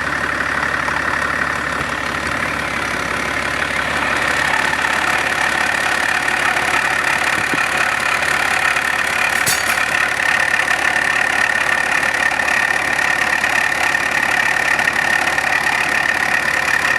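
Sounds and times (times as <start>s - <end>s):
engine idling with a knock: 0.0s - 16.9s.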